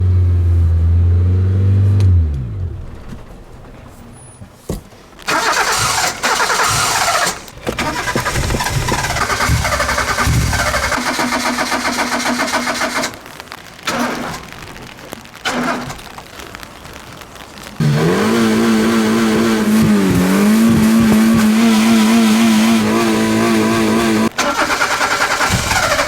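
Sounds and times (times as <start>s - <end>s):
starter motor cranking engine: 5.3s - 13.2s, 13.9s - 14.4s, 15.5s - 16.0s, 17.8s - 26.0s.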